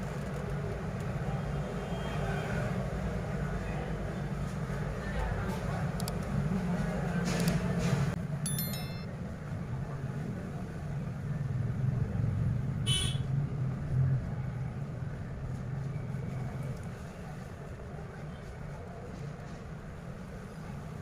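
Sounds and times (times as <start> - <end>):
short high tones: 8.5 - 9.1.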